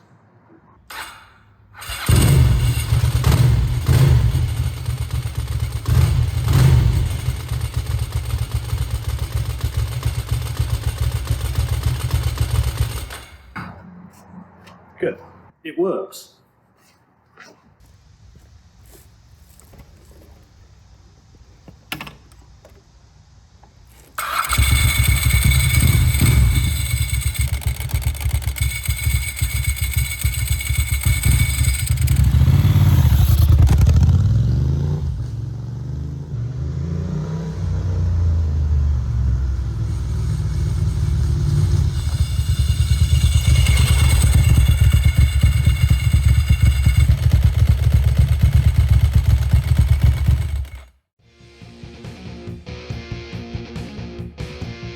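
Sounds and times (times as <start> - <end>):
motorcycle engine revving: 1.8 - 13.8, 24.2 - 50.9.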